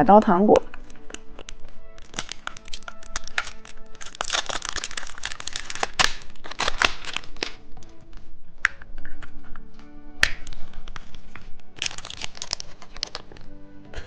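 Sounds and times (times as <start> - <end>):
sharp snaps: 0.6 - 7.6, 10.1 - 13.4
plastic packaging crinkling and tearing: 0.6 - 9.6, 10.2 - 13.6.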